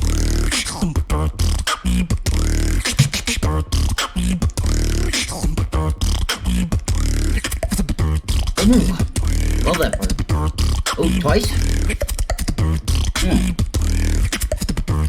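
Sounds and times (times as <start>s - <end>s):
beatboxing: 0.0s - 15.0s
heavy bass line: 8.0s - 12.0s.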